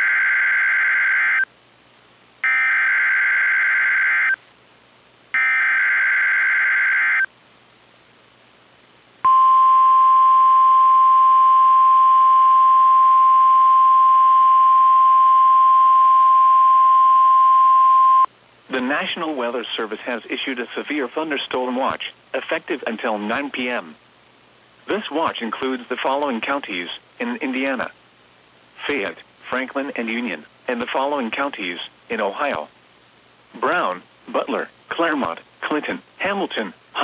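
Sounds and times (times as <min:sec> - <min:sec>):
steady warning alarm tone: 0:02.4 - 0:04.4, 0:05.4 - 0:07.3.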